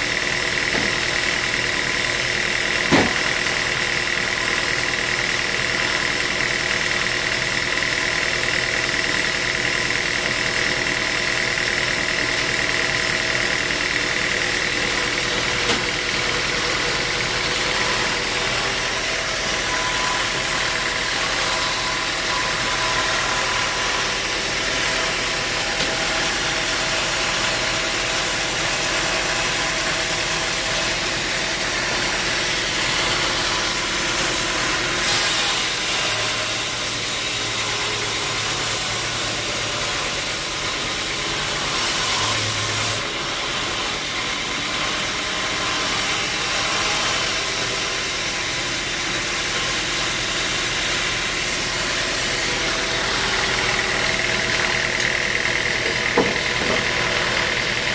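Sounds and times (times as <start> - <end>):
high machine whine: 0.0 - 35.0
sawmill machinery hum: 0.0 - 57.9.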